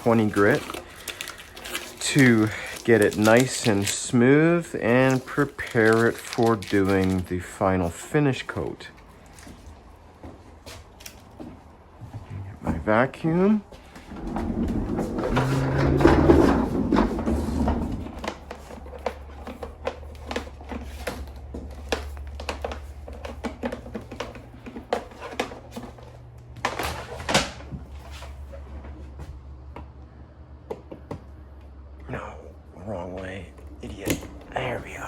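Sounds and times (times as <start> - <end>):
plastic parts clattering: 0.0 - 7.4, 14.1 - 28.2
low steady hum: 0.0 - 35.0.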